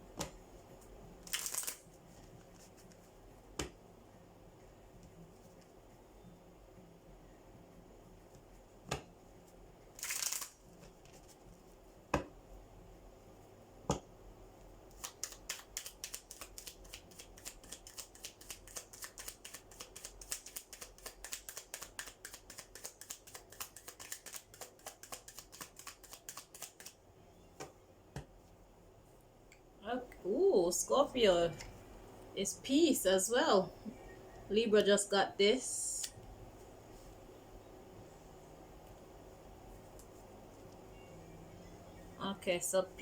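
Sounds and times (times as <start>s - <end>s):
cards being shuffled: 1.2s - 3.0s, 10.0s - 11.5s, 14.9s - 27.0s
rapid card clicks: 10.0s - 10.6s, 14.9s - 27.0s.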